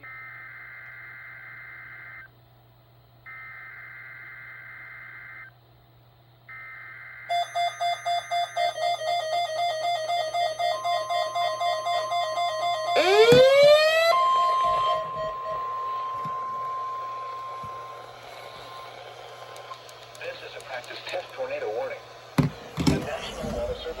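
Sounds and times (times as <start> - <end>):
alarm beeping rapidly: 7.3 - 20.9
steady tone: 7.3 - 24.0
two-tone data screech: 7.3 - 24.0.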